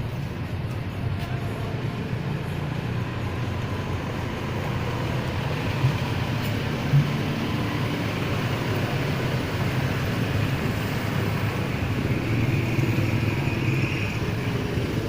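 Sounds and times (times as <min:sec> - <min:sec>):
vehicle engine and road noise: 0:00.0 - 0:15.0.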